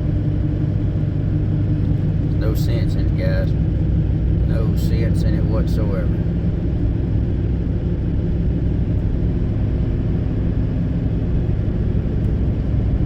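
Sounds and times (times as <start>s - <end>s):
diesel engine drone: 0.0s - 13.0s.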